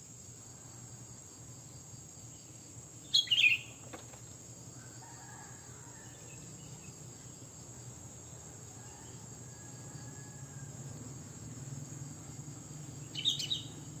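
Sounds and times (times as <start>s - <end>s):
bird chirping: 2.4s - 3.8s, 13.0s - 13.9s.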